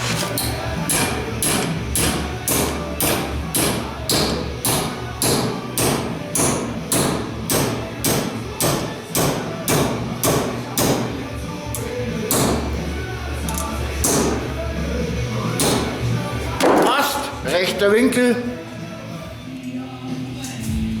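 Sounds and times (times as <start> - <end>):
hammer striking steel rod: 0.4 - 11.1.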